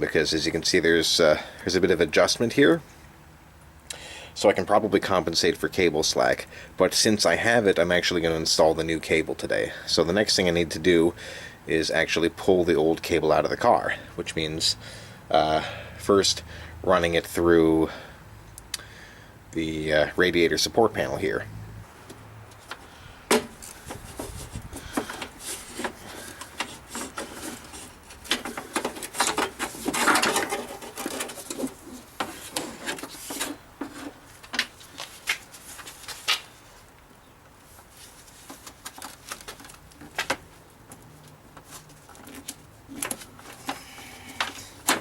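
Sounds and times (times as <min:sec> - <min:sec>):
cable scraping through panel: 0:22.6 - 0:34.7.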